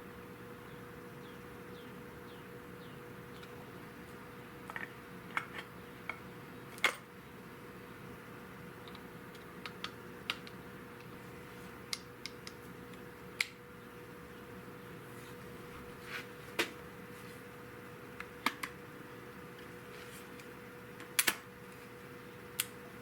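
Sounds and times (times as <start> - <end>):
faint steady hum: 0.0 - 23.0
small parts clicking and tapping: 8.8 - 11.1.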